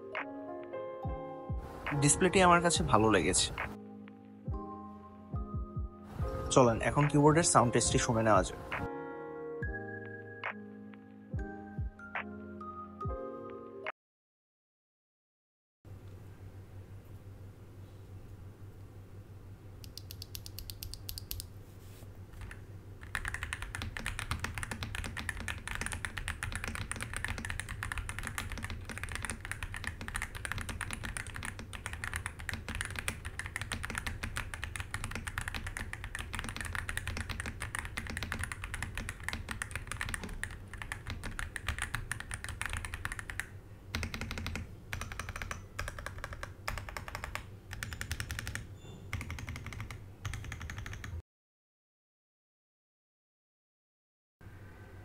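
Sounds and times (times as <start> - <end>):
mechanical keyboard typing: 19.9 - 21.5, 22.4 - 51.2.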